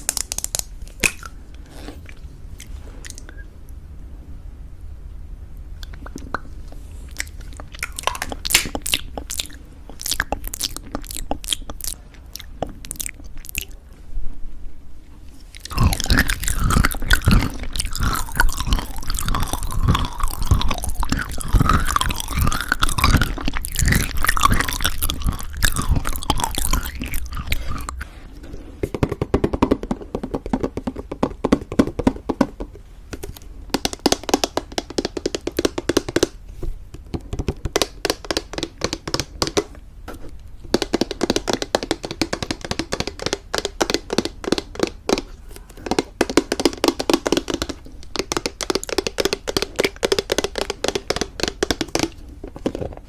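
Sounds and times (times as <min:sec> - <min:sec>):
close chewing of crunchy granola: 0:07.0 - 0:13.8, 0:15.4 - 0:28.2.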